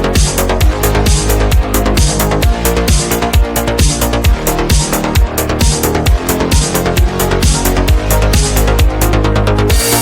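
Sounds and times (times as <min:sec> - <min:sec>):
electronic dance music: 0:00.0 - 0:10.0.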